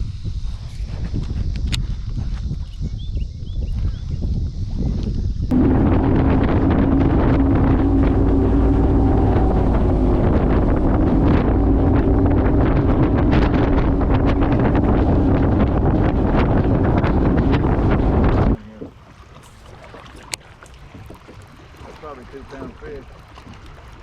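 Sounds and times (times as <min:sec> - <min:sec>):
wind buffeting microphone: 0:00.0 - 0:19.0
outboard motor running: 0:05.5 - 0:24.0.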